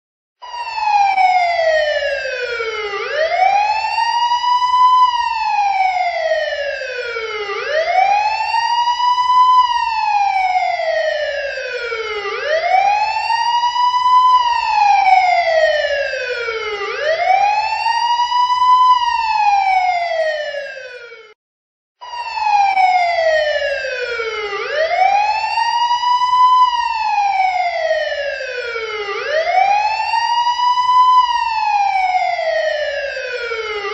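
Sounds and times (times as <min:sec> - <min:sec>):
police siren wailing: 0:00.4 - 0:21.4, 0:22.0 - 0:33.9.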